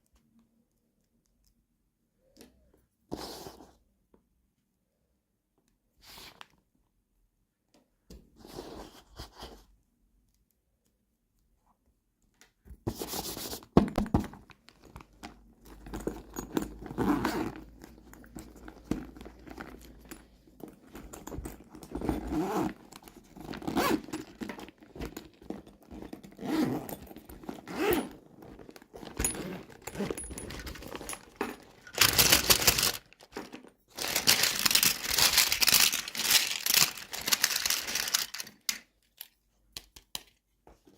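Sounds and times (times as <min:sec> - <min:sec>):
packaging crinkling and tearing: 0:28.5 - 0:39.3.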